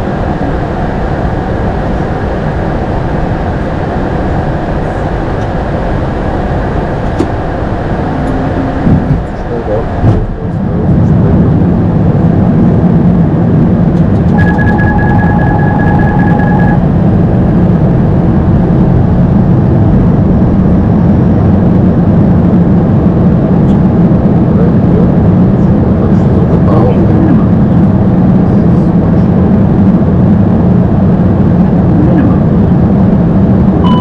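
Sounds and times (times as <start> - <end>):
airflow and engine hum: 0.0 - 34.0
steady electronic tone: 7.5 - 9.1, 14.0 - 18.8, 33.8 - 34.0.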